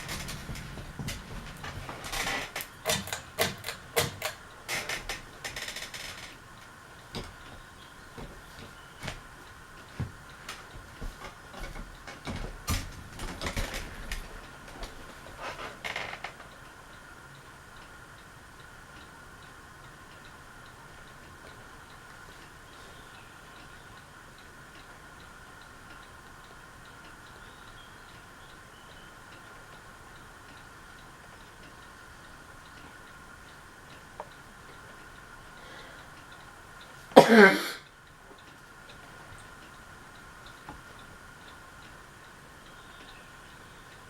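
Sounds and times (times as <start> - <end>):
loud clicks and knocks: 0.0 - 6.4
ceiling fan motor hum: 0.0 - 44.0
scattered ticks: 37.9 - 44.0.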